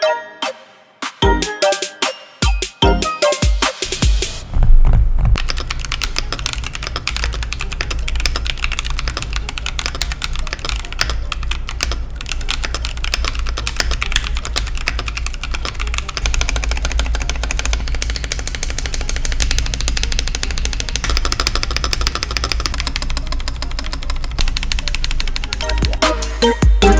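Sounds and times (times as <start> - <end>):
steady low hum: 4.3 - 26.0
mechanical keyboard typing: 5.4 - 26.1.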